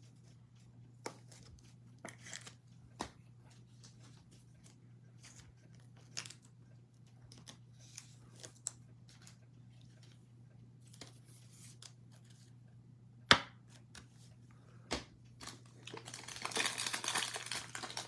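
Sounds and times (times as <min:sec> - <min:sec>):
foil wrappers rustling: 0:15.4 - 0:18.0.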